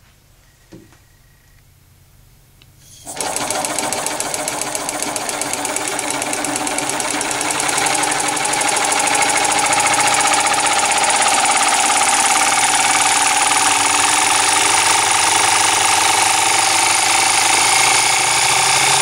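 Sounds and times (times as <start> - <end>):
small air compressor chattering: 2.8 - 19.0.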